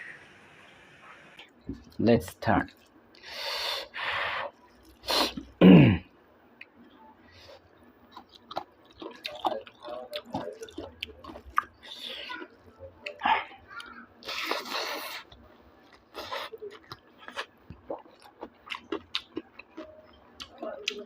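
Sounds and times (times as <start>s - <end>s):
chewing with wet smacks: 8.1s - 21.0s.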